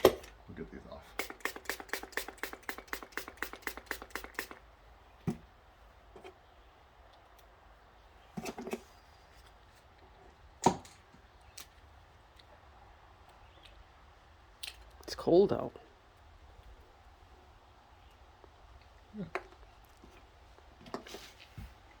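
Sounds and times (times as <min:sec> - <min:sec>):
dent-repair tool clicks: 0:01.2 - 0:04.6.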